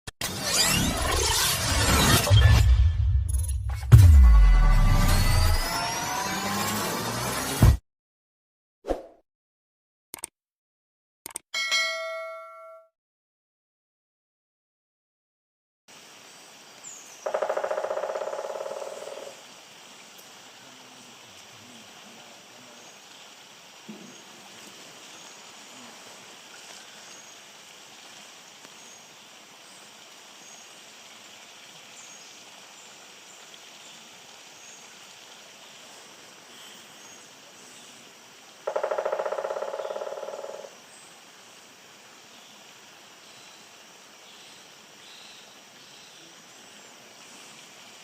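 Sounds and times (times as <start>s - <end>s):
woodpecker drumming on wood: 17.2s - 19.4s, 38.7s - 40.7s.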